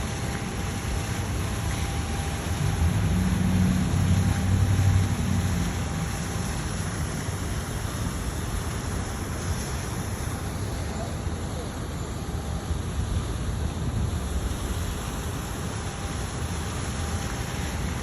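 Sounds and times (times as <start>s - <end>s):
street traffic: 0.0s - 9.2s
vehicle engine rumble passing: 1.8s - 7.7s.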